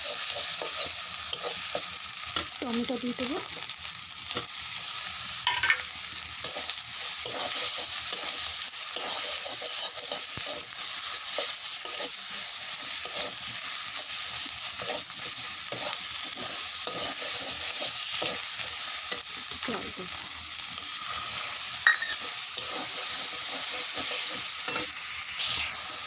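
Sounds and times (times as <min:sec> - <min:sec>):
spatula scraping a pan: 0:00.0 - 0:02.5, 0:06.4 - 0:19.3, 0:20.9 - 0:25.0
masala sizzling in hot oil: 0:00.0 - 0:26.0.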